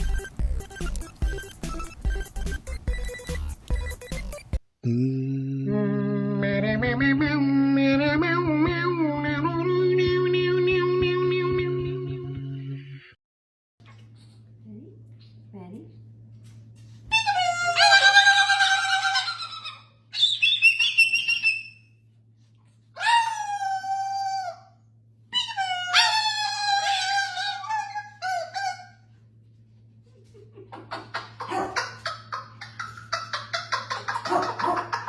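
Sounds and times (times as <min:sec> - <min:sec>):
animal high-pitched calls: 0:17.1 - 0:22.0, 0:23.0 - 0:29.1.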